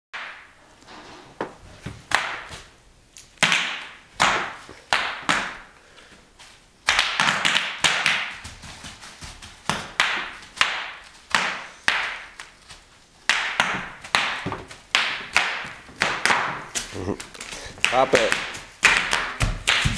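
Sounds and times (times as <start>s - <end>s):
bubble wrap popping: 6.8s - 19.9s.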